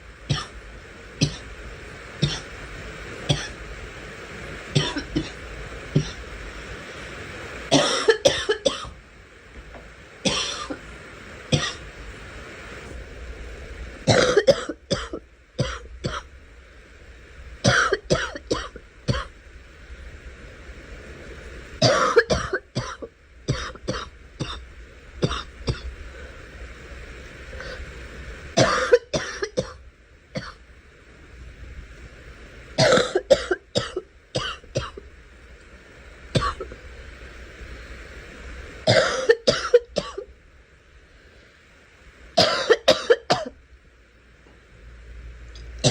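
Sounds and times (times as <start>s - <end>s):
girl coughing: 7.7s - 8.9s, 42.4s - 43.5s.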